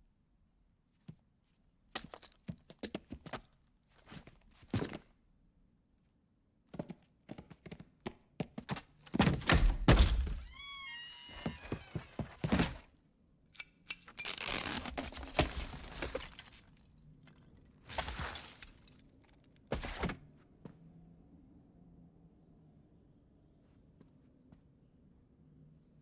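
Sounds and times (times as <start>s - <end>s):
sharp knocks and thuds: 9.1s - 10.6s.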